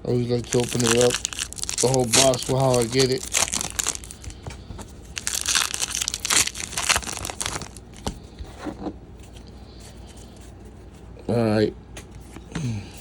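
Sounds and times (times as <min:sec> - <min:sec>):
packaging crinkling and tearing: 0:00.2 - 0:08.2.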